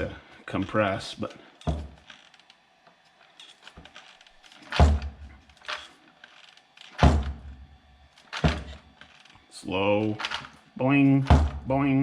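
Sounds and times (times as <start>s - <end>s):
toy truck suspension thunks: 0.6s - 9.4s, 10.0s - 11.7s
small knocks: 1.6s - 2.5s.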